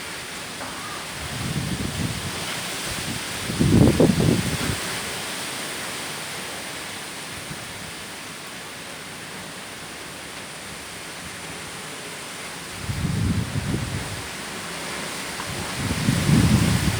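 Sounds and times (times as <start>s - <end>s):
wind storm rushing: 1.1s - 5.0s, 12.7s - 16.9s.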